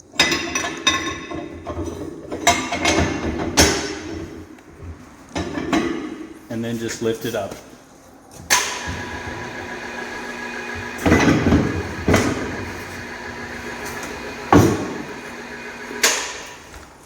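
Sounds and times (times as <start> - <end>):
excavator hydraulic whine: 8.7 - 16.7.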